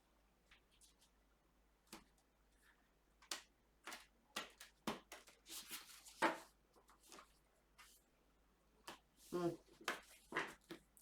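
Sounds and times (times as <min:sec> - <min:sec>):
cards tapping and clicking: 0:03.2 - 0:05.4.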